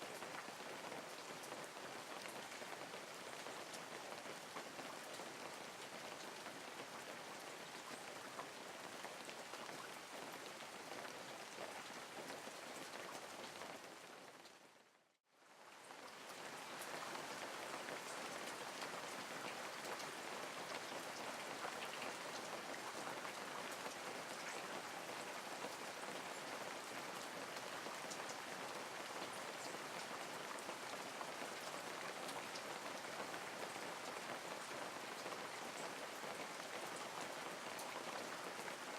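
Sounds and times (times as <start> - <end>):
steady rain falling: 0.0 - 38.9.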